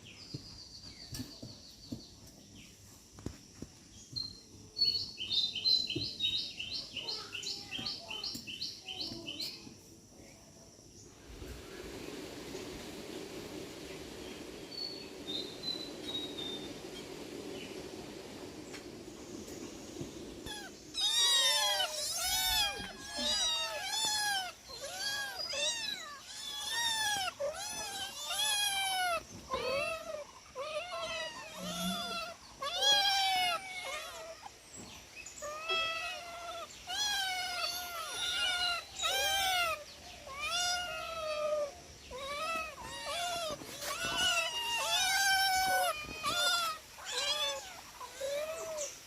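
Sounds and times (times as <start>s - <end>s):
cats meowing: 20.4s - 34.6s, 35.4s - 49.0s.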